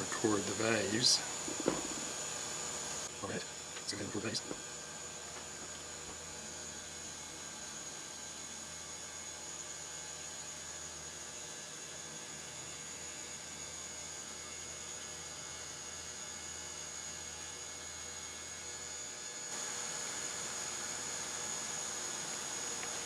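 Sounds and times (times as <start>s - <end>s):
background hiss and hum: 0.0s - 7.0s, 19.4s - 23.0s.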